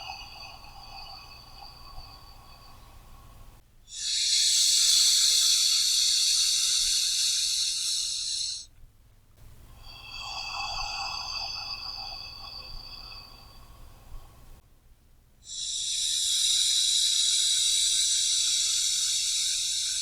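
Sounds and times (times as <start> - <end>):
person breathing deeply: 3.9 - 8.7, 15.5 - 20.0.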